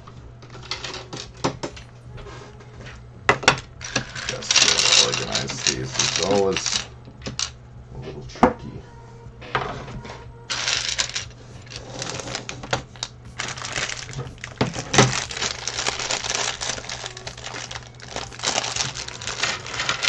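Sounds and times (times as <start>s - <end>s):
plastic bricks clicking and rattling: 3.8s - 7.5s, 10.5s - 20.0s.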